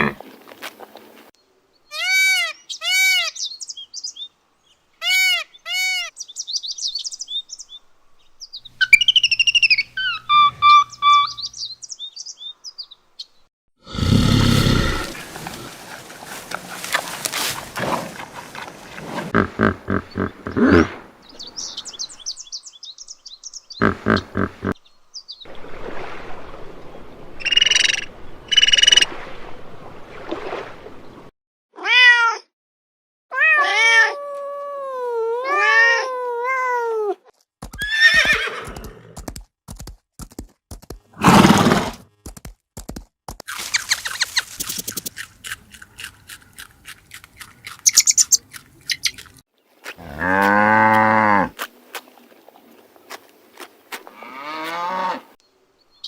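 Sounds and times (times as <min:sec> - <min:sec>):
animal calls: 0:23.8 - 0:24.8.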